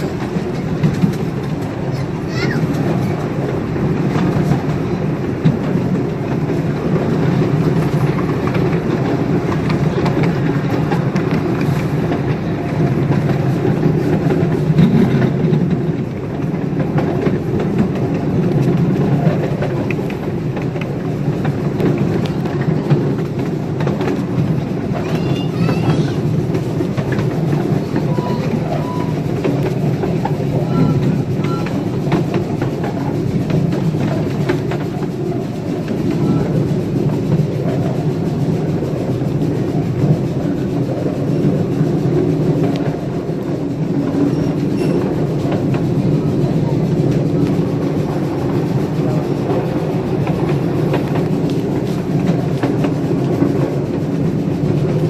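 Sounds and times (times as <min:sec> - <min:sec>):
train wheels rumbling on rails: 0:00.0 - 0:55.0.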